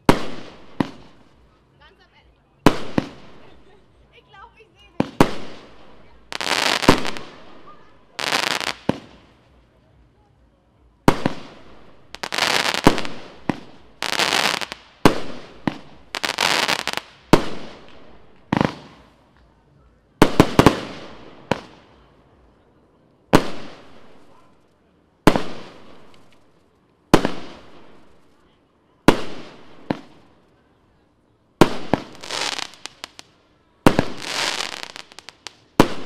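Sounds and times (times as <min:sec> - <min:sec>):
firework bangs: 0:00.0 - 0:01.4, 0:02.6 - 0:03.9, 0:04.8 - 0:09.4, 0:11.0 - 0:19.2, 0:20.2 - 0:22.1, 0:23.3 - 0:24.5, 0:25.2 - 0:28.3, 0:29.0 - 0:30.4, 0:31.6 - 0:36.0
fireworks hissing and crackling: 0:00.0 - 0:09.8, 0:11.0 - 0:19.6, 0:20.2 - 0:22.1, 0:23.3 - 0:30.9, 0:31.6 - 0:36.0.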